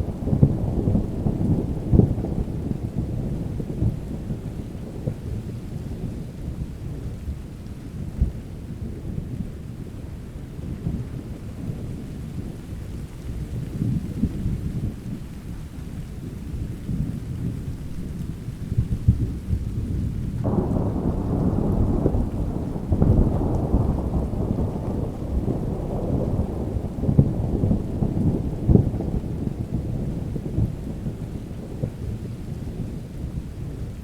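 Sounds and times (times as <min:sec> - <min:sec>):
rain: 0:00.0 - 0:34.0
thunder rumbling: 0:00.0 - 0:34.0
thunder clap: 0:17.0 - 0:34.0.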